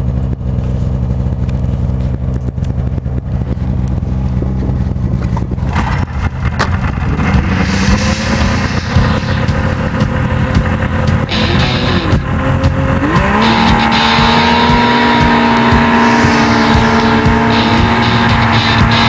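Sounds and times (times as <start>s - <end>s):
snowmobile engine droning: 0.0s - 19.0s
hiss: 7.2s - 10.4s.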